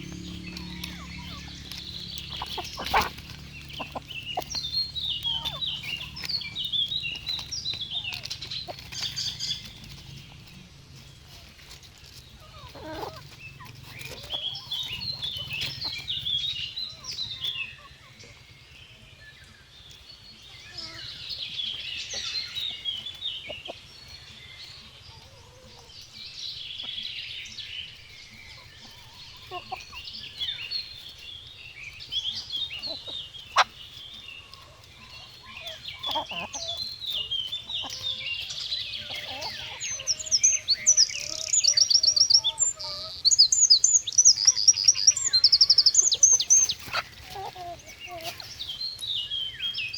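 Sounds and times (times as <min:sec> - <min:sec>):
birds chattering: 0:00.0 - 0:49.9.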